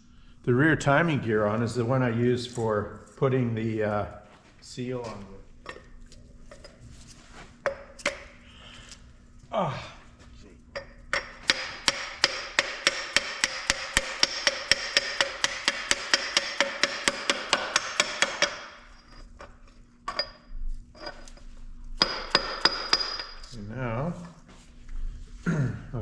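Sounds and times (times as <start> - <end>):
hammer tapping on metal tool: 10.7 - 18.7, 22.0 - 23.4.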